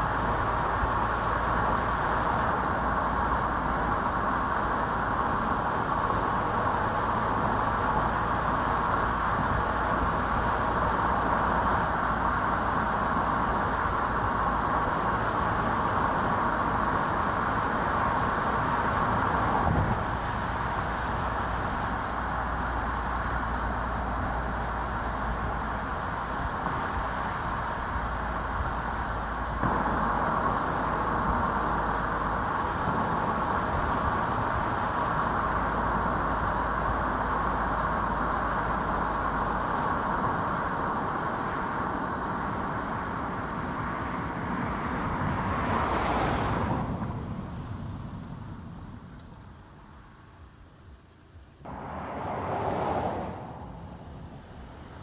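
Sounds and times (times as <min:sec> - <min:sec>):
car tyre and road noise: 0:00.0 - 0:55.0.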